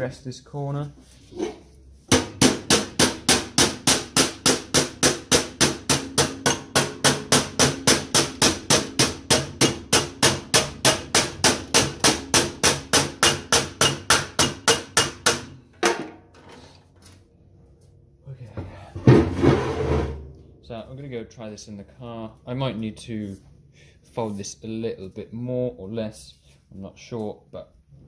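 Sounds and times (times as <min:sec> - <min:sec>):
hammer striking metal block: 0:02.1 - 0:16.1.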